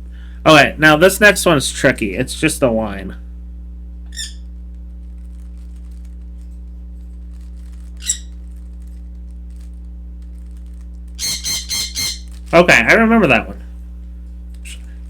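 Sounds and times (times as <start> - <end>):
low electrical hum: 0.0 - 15.0
high-pitched squeaks: 8.0 - 8.4, 11.2 - 12.3.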